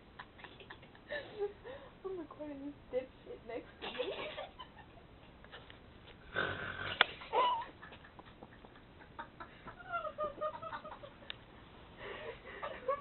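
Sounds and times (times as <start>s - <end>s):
person snoring: 6.3s - 7.0s.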